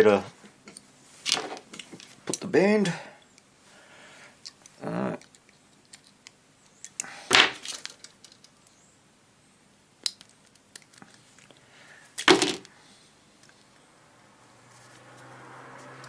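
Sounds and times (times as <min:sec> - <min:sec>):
light clicks and taps of tools: 0:04.4 - 0:08.8, 0:13.4 - 0:13.8
metal parts scraping clatter: 0:07.3 - 0:08.5.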